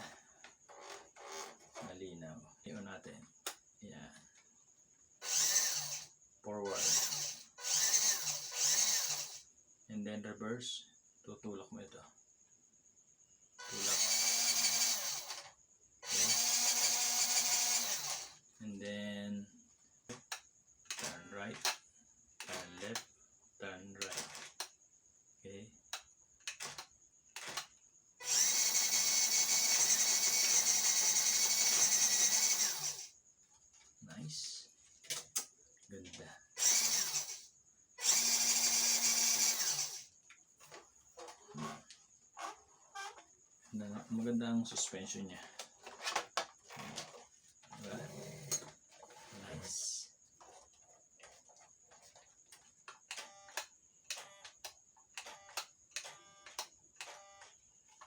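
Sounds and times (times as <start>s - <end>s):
electric motor and gearbox whirring: 5.2s - 6.1s, 6.7s - 9.4s, 13.6s - 18.4s, 27.4s - 33.1s, 36.6s - 43.2s, 50.4s - 58.0s.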